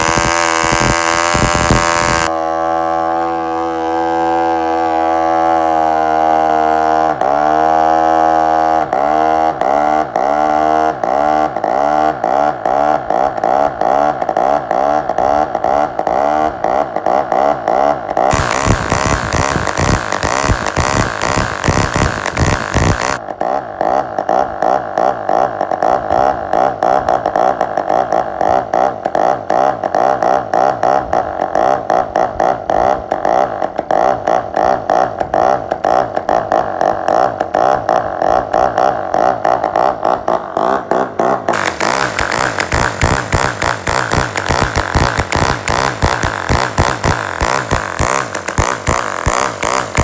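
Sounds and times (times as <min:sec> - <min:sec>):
model engine buzzing drone: 0:00.0 - 0:23.2, 0:37.5 - 0:50.0.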